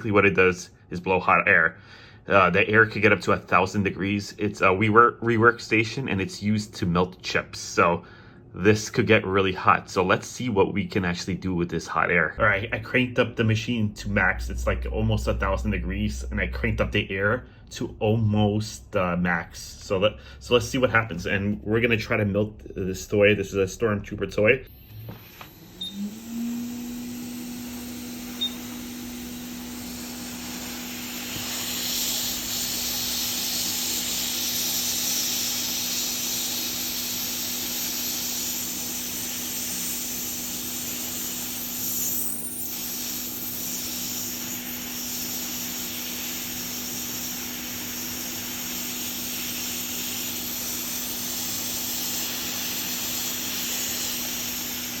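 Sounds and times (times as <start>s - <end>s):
hot air blower hissing: 24.6s - 55.0s.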